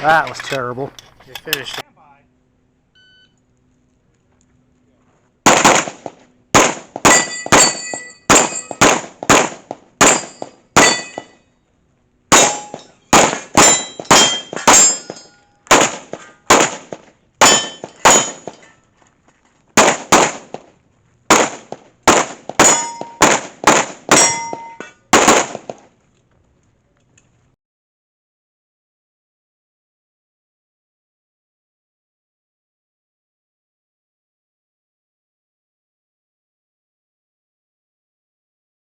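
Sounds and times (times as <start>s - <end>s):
rapid pistol fire: 5.4s - 11.2s, 12.3s - 18.6s, 19.8s - 20.7s, 21.3s - 25.9s
steel targets clanging: 7.0s - 9.0s, 10.0s - 11.4s, 12.3s - 16.8s, 17.4s - 18.8s, 22.5s - 25.3s.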